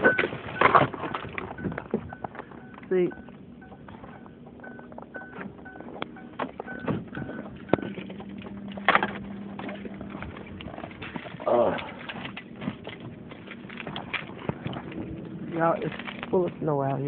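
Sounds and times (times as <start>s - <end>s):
car warning chime beeping: 0.0s - 0.8s, 1.6s - 8.8s.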